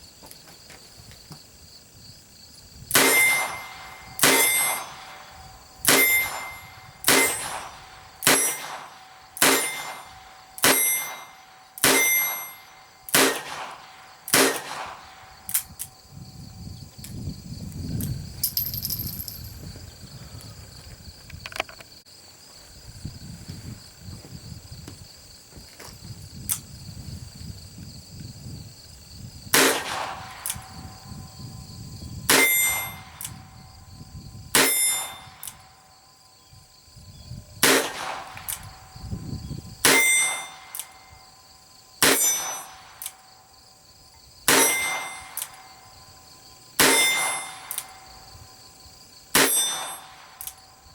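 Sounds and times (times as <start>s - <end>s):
revolver gunshots: 2.9s - 15.6s, 29.6s - 30.6s, 37.6s - 38.6s.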